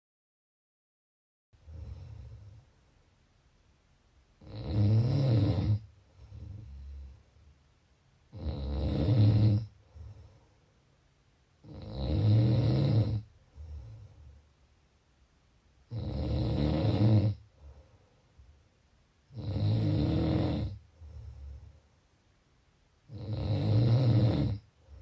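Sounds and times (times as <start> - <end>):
person snoring: 1.6 - 2.6, 4.4 - 7.2, 8.3 - 10.3, 11.6 - 14.2, 15.9 - 17.8, 19.3 - 21.7, 23.1 - 25.0
soft breath: 1.6 - 3.2, 5.8 - 7.6, 9.6 - 11.1, 13.3 - 14.7, 17.4 - 18.9, 20.8 - 22.2, 24.6 - 25.0.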